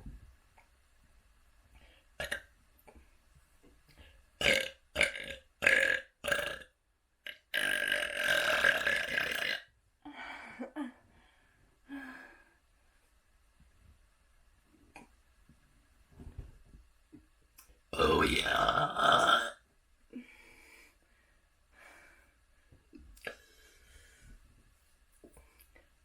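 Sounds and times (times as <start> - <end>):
person burping: 2.2 - 2.4, 4.4 - 6.7, 7.3 - 9.6, 18.0 - 19.6.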